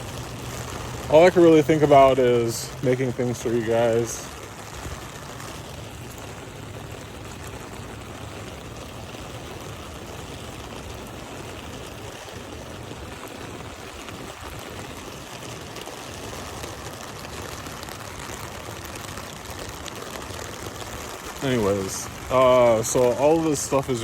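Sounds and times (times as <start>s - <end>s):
steady rain: 0.0s - 24.0s
water running: 0.9s - 4.4s, 21.2s - 24.0s.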